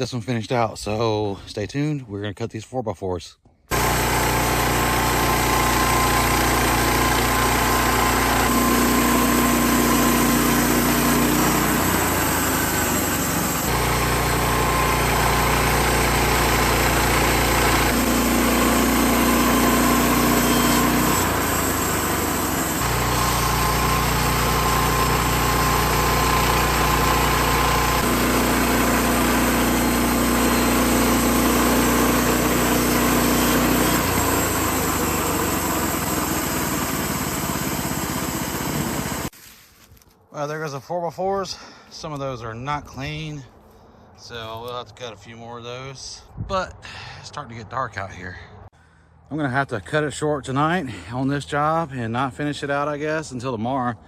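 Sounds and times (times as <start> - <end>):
sawmill engine running: 3.7 - 39.3
band blade sawing wood: 3.7 - 39.6.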